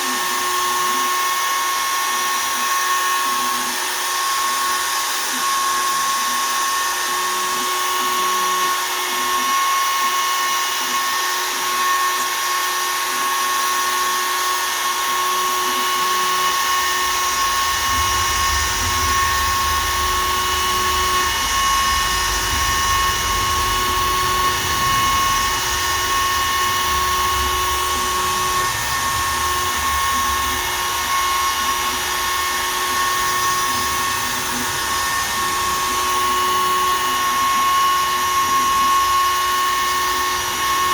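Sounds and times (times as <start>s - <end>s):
router cutting wood whine: 0.0s - 40.9s
deeper rumble: 15.7s - 38.5s.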